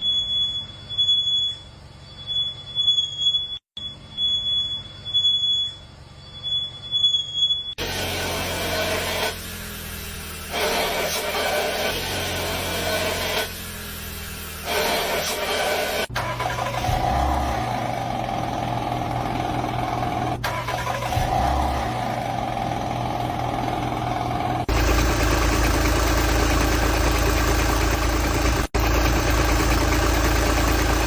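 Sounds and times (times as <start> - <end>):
car engine running: 7.8 - 31.0.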